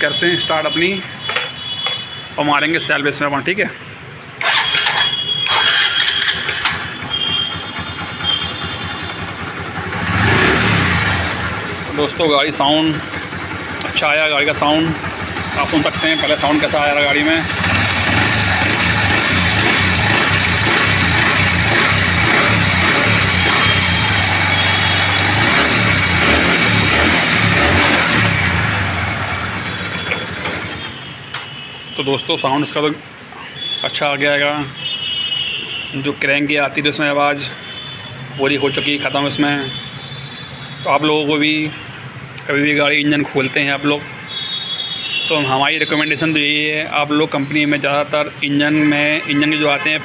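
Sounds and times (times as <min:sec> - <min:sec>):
motorcycle engine starting and idling: 0:04.4 - 0:31.1.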